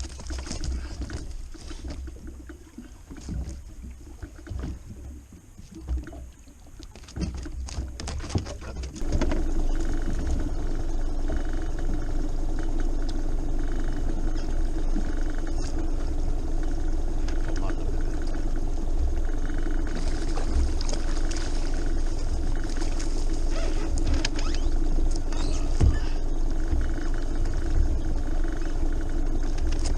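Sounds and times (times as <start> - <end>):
small knocks on boat: 0.0 - 10.5
boat motor humming: 0.0 - 29.9.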